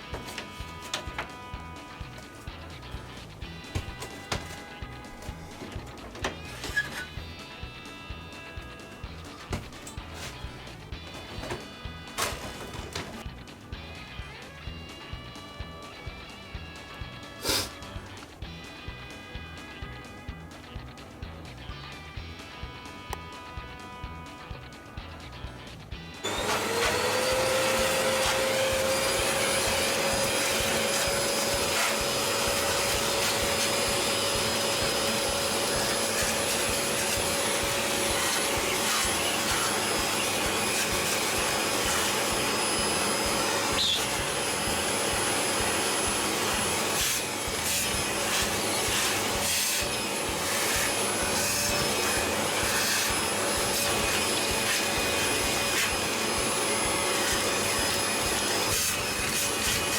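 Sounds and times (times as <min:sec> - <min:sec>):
scraping: 0:03.8 - 0:07.2
vacuum cleaner motor whine: 0:26.2 - 0:59.9.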